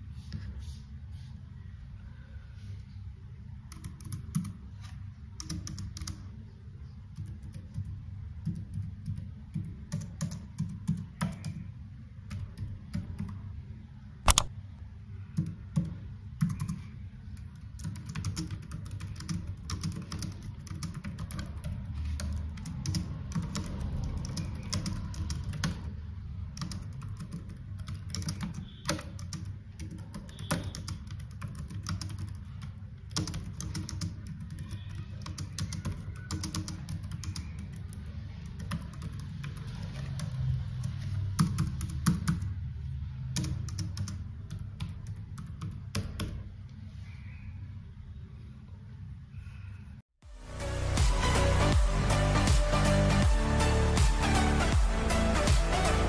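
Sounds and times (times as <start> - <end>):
keyboard key clicks: 14.3 - 14.5.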